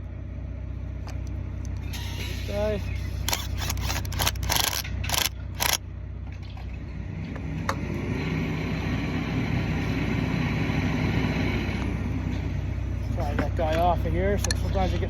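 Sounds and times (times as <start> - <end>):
engine drone: 0.0 - 15.0
metal parts rasping scrapes: 1.9 - 5.8.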